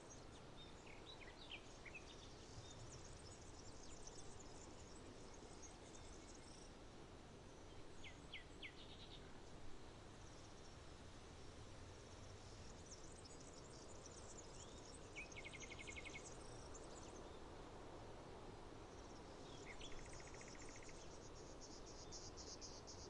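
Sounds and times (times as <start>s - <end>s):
small birds chirping: 12.4s - 17.4s, 18.9s - 23.0s.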